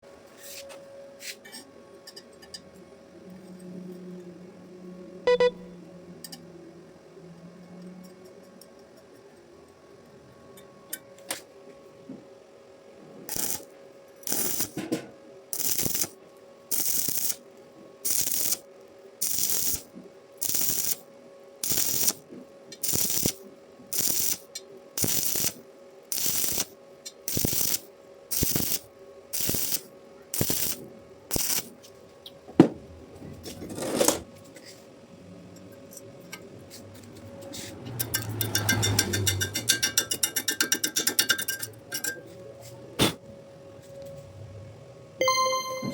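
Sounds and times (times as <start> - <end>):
arc welding hissing bursts: 13.3 - 13.7, 14.3 - 14.8, 15.5 - 17.4, 18.0 - 18.6, 19.2 - 21.0, 21.6 - 22.2, 22.8 - 31.7.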